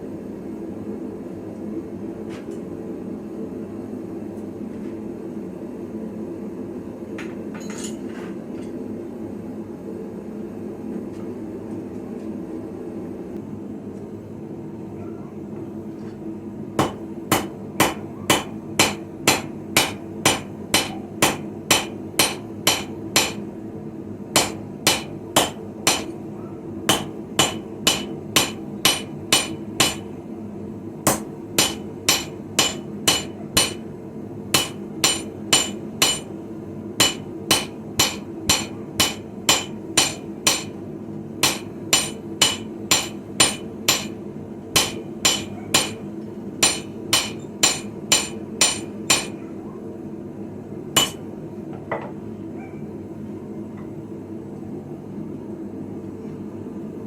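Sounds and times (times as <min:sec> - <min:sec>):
steady low hum: 0:12.4 - 0:57.0
hammer striking iron on anvil: 0:16.8 - 0:23.4, 0:24.3 - 0:26.2, 0:26.9 - 0:30.2, 0:31.0 - 0:33.9, 0:34.5 - 0:36.3, 0:37.0 - 0:40.8, 0:41.4 - 0:46.0, 0:46.6 - 0:49.4, 0:51.0 - 0:51.3.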